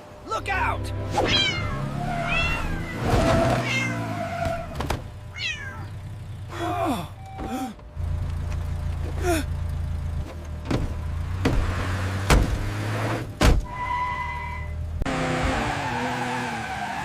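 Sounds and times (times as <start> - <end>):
low car engine hum: 0.0 - 17.0
cartoon cat meowing: 1.1 - 4.0, 5.3 - 5.9.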